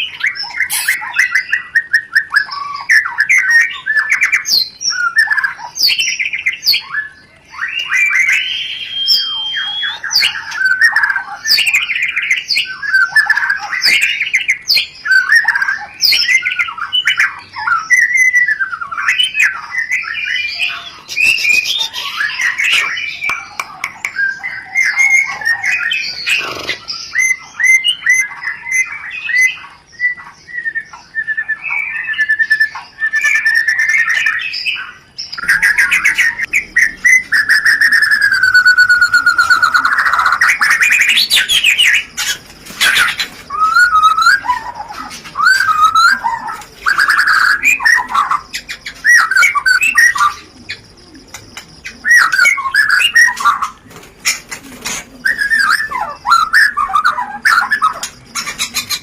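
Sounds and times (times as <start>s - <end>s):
bird sharp chips: 0.0s - 1.4s, 20.4s - 27.4s, 35.2s - 59.0s
bird chattering notes: 0.0s - 4.5s, 19.9s - 29.8s, 32.8s - 59.0s
bird whistling song: 0.0s - 59.0s.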